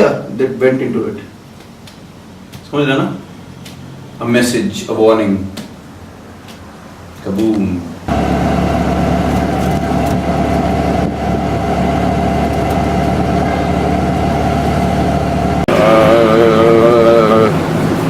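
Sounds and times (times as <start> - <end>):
engine humming: 8.1 - 18.0.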